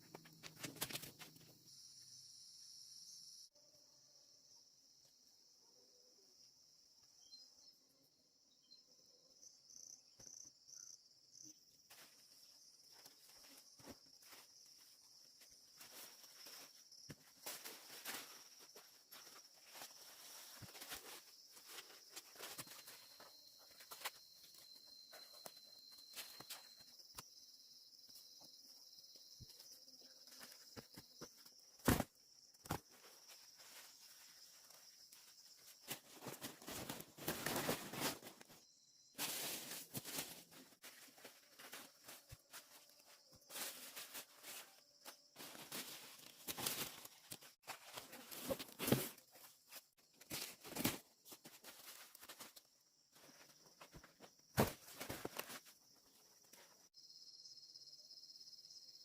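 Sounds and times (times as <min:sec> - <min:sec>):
crickets chirping: 0:00.0 - 0:59.0.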